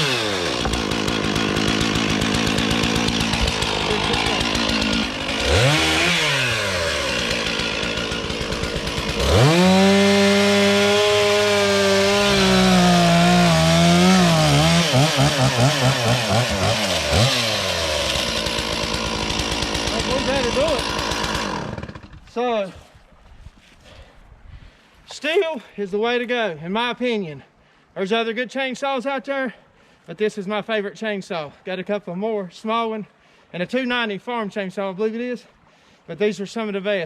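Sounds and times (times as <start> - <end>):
chainsaw cutting wood: 0.0 - 22.4.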